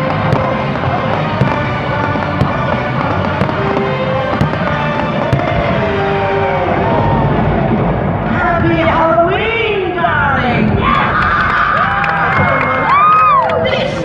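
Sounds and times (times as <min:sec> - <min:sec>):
loud music over loudspeakers: 0:00.0 - 0:06.9
fireworks bursting with bangs: 0:00.0 - 0:09.5.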